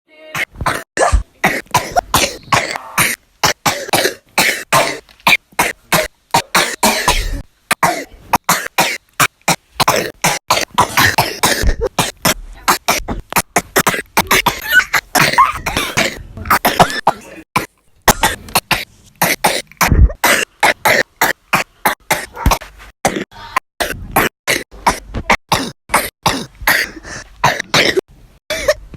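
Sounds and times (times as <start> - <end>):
person sneezing rapidly: 0.3 - 28.8.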